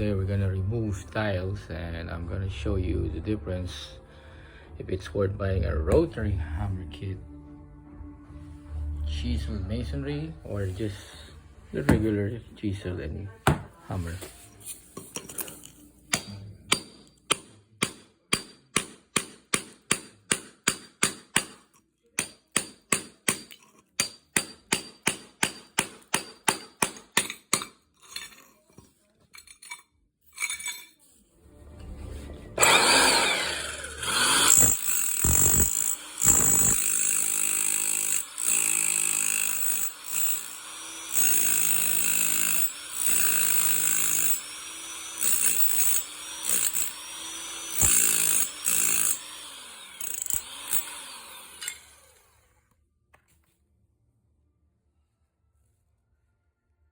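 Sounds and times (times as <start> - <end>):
hammer striking chisel: 11.9 - 12.1, 13.4 - 13.7, 16.1 - 28.3, 34.0 - 51.9
rotary hammer breaking tile: 15.3 - 28.6, 34.0 - 51.9.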